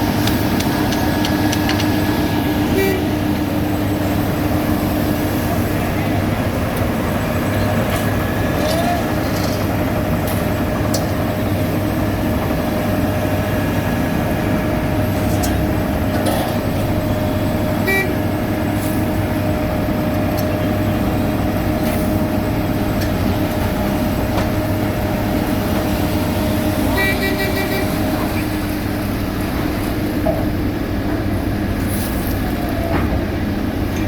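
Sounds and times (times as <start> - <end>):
diesel machinery droning: 0.0 - 34.0.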